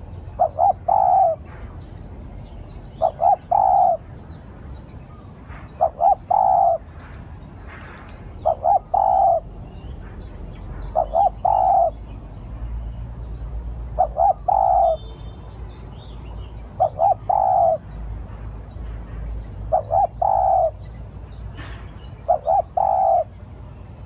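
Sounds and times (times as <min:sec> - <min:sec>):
dove cooing: 0:00.4 - 0:01.5, 0:03.0 - 0:04.0, 0:05.5 - 0:06.9, 0:08.4 - 0:09.5, 0:10.9 - 0:12.0, 0:14.0 - 0:15.0, 0:16.8 - 0:17.8, 0:19.7 - 0:20.8, 0:22.3 - 0:23.3.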